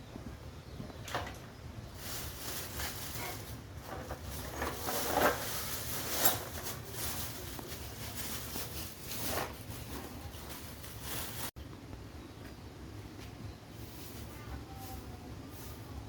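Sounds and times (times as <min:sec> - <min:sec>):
hands handling hard objects: 0:01.0 - 0:11.6.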